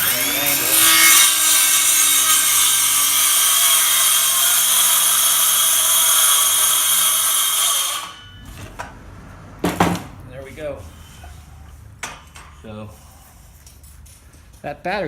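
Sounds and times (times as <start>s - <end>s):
circular saw cutting board: 0.0s - 8.7s.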